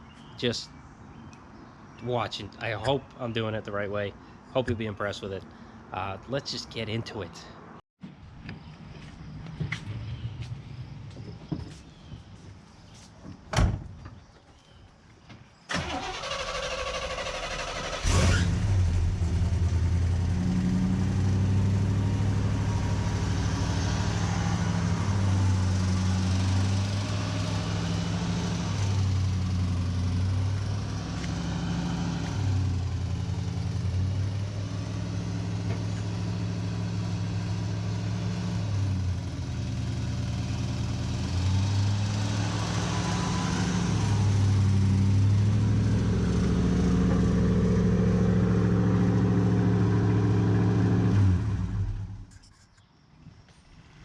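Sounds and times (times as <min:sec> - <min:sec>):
car engine fast idle: 0:15.7 - 0:19.1.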